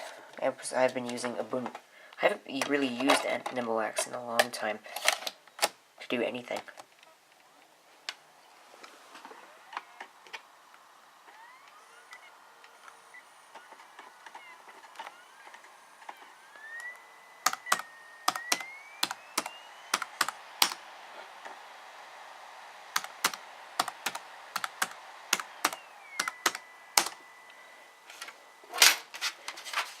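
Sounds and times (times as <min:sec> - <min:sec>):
faint whine: 0:00.0 - 0:30.0
laptop keyboard keys clicking: 0:16.8 - 0:20.8, 0:22.9 - 0:27.2.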